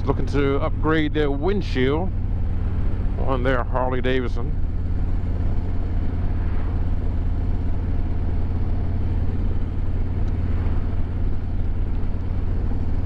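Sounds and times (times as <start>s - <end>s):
motorcycle engine rumbling: 0.0s - 13.0s.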